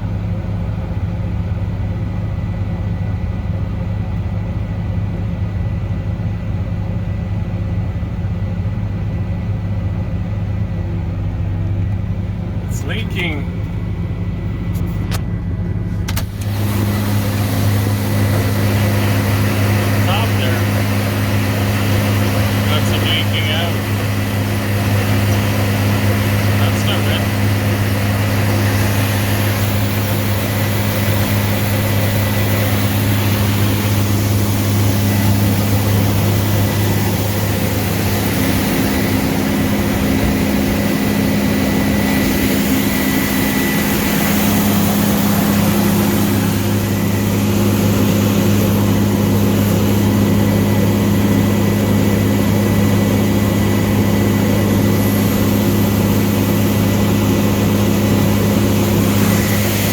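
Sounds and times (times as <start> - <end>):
combine harvester low hum: 0.0 - 59.9
faint high whine: 16.2 - 59.9.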